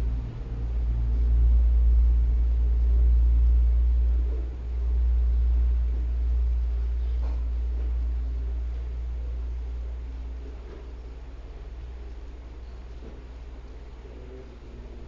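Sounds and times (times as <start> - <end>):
low rumble: 0.0 - 10.0.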